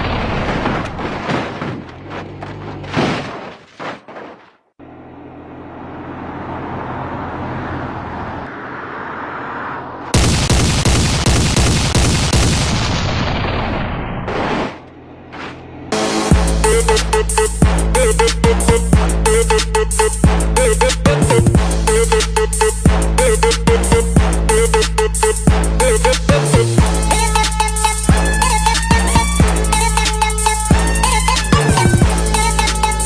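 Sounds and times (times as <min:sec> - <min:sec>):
loud thunderclap with crackling: 0:10.2 - 0:13.9.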